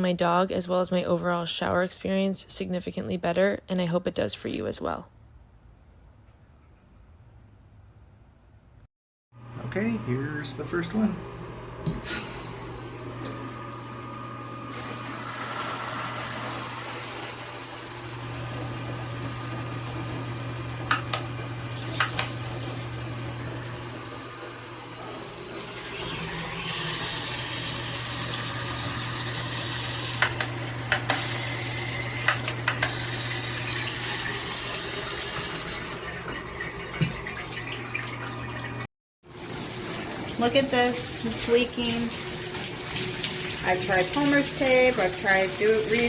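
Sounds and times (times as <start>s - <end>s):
shower head spraying water: 11.9s - 36.3s, 39.3s - 46.0s.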